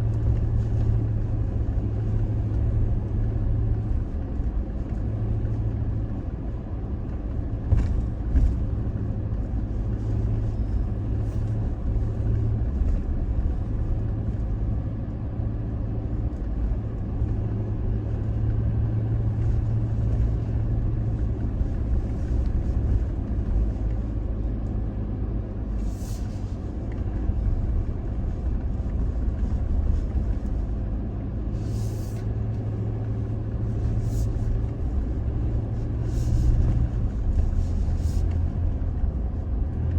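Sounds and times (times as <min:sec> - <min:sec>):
pickup truck driving on dirt road: 0:00.0 - 0:39.9
brief hissing scrapes: 0:25.8 - 0:26.6, 0:31.6 - 0:32.2.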